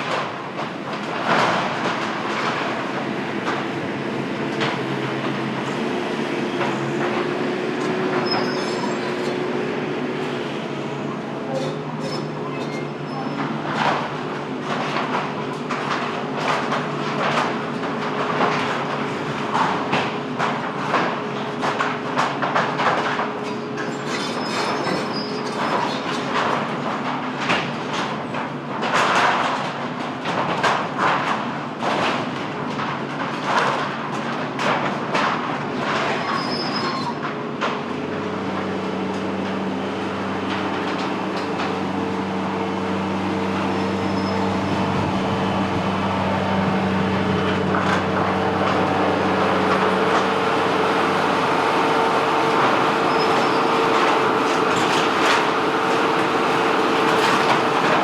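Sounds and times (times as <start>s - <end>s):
machine drone: 0.0s - 20.1s, 37.9s - 58.0s.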